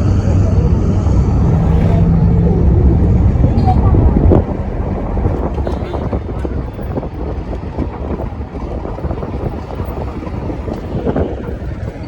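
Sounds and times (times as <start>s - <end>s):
faint traffic noise: 0.0s - 8.2s
wind buffeting microphone: 0.0s - 12.0s.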